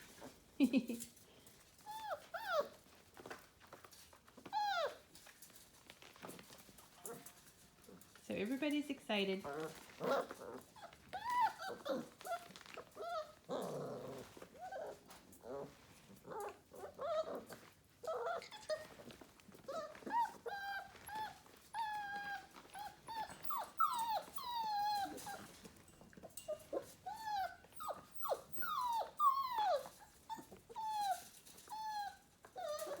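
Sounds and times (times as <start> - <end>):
puppies whining: 1.8 - 3.0, 4.4 - 5.2, 9.5 - 33.0.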